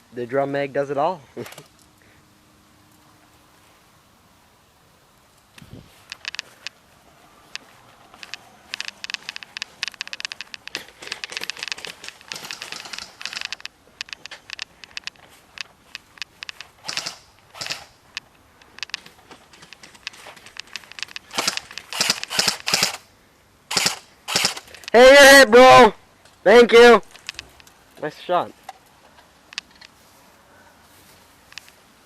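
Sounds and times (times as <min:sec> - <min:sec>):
airsoft guns firing: 0:10.7 - 0:13.6, 0:16.8 - 0:18.0, 0:21.2 - 0:23.0, 0:23.7 - 0:24.7.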